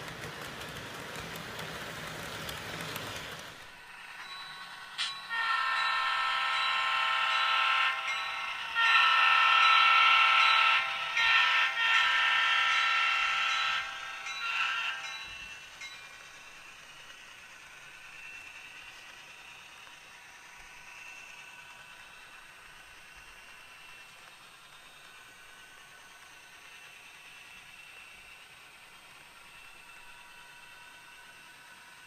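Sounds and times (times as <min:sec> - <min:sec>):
train horn blasts: 0:05.3 - 0:15.0.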